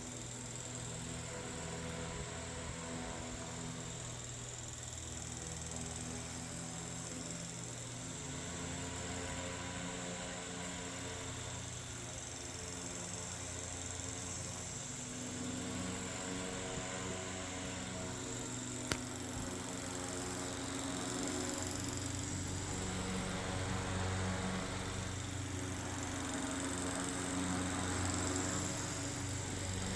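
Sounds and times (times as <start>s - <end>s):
electric fan humming: 0.0s - 29.9s
sharp click: 18.7s - 19.5s.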